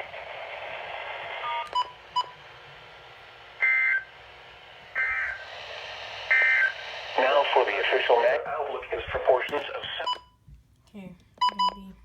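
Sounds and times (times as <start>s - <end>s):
faint radio hiss: 0.0s - 1.8s, 5.0s - 10.2s
electronic beeps: 6.3s - 7.4s.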